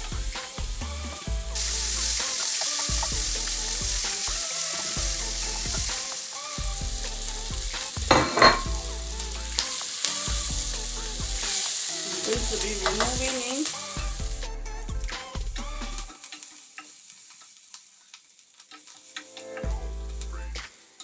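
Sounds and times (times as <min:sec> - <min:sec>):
background music: 0:00.0 - 0:17.1, 0:18.9 - 0:21.0
vegetables sizzling in oil: 0:00.0 - 0:19.4
spoon stirring pot: 0:07.4 - 0:14.2
metal clank: 0:08.1 - 0:08.8.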